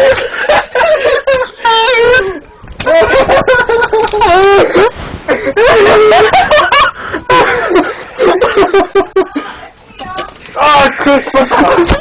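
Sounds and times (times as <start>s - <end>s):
people laughing and shrieking: 0.0s - 12.0s.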